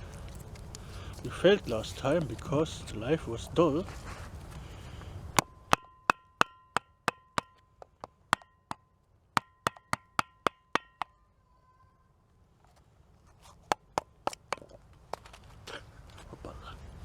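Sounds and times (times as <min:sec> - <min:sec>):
baton knocking on knife blade: 0:09.4 - 0:11.1.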